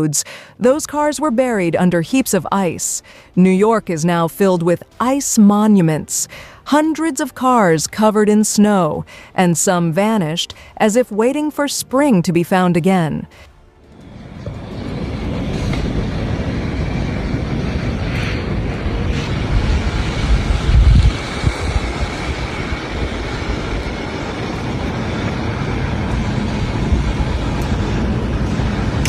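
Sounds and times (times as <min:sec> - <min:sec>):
wind buffeting microphone: 0:13.8 - 0:29.0.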